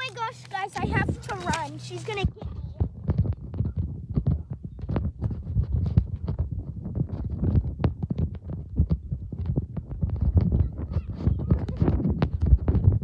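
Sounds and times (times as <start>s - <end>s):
running footsteps: 0.0s - 2.4s
wind rumble on microphone: 0.8s - 1.6s, 2.2s - 13.0s.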